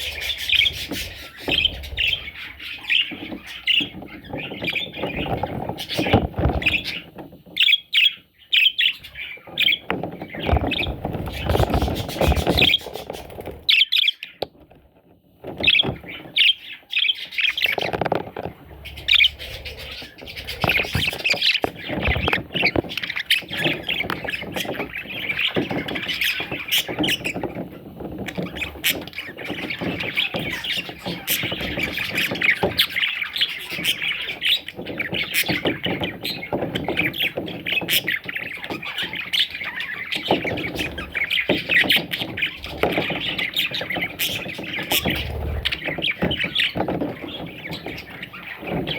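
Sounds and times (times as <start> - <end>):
budgerigars chirping: 0.0 - 14.4, 15.6 - 18.0, 18.7 - 27.6, 28.3 - 48.9.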